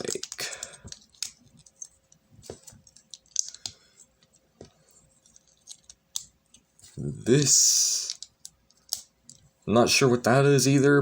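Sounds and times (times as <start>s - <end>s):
plastic bricks clicking and rattling: 0.0s - 2.0s, 2.6s - 3.8s.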